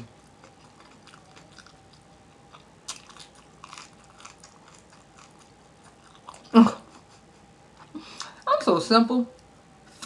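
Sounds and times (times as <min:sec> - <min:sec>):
chewing with lips smacking: 0:00.0 - 0:07.0.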